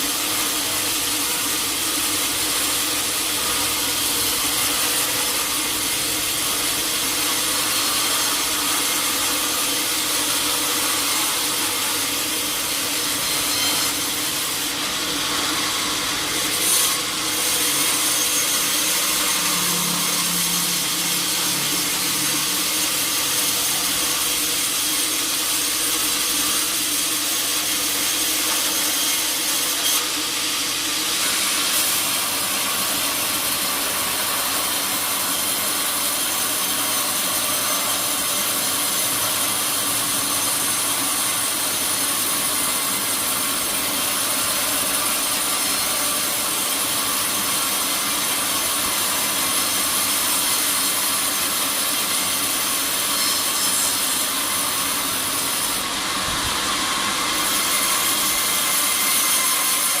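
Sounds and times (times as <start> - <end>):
saw cutting through log: 0.0 - 60.0.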